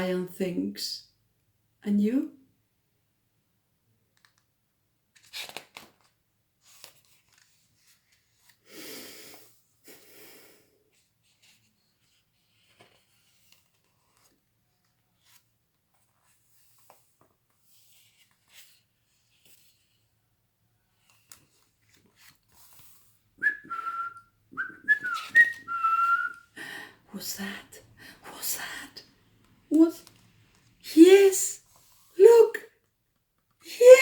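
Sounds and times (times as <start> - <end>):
paper pages rustling: 5.1 - 8.6, 10.9 - 20.2, 20.9 - 23.2, 29.3 - 30.8, 31.6 - 32.2.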